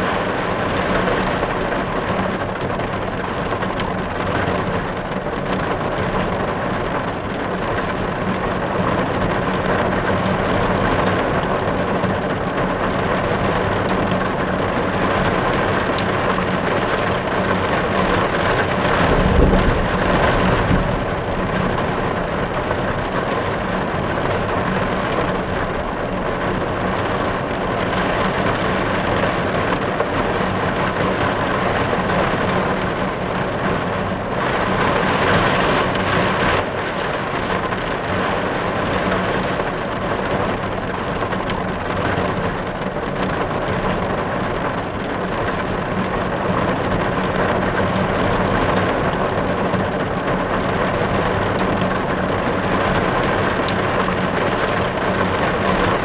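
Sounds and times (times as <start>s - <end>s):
rain drumming on car roof: 0.0s - 56.0s
low rumble: 18.6s - 23.6s.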